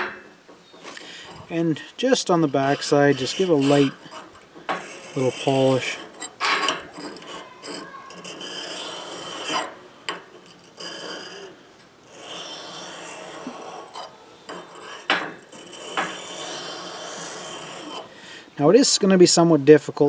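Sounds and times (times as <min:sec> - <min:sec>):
blade scraping on sharpening stone: 0:02.3 - 0:18.1.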